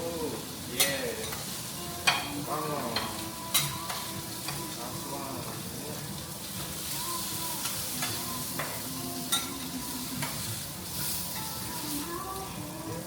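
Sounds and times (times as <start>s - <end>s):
food sizzling on a griddle: 0.0s - 13.0s.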